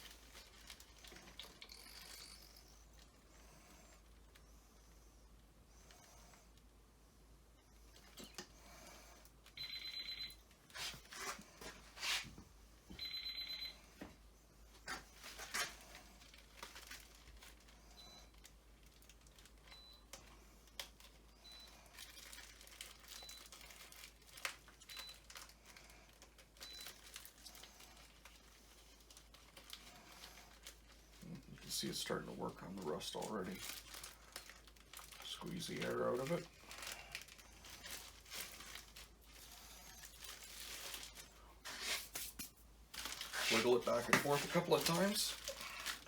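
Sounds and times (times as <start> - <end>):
plastic bag crinkling: 0.0 - 3.2, 14.8 - 46.0.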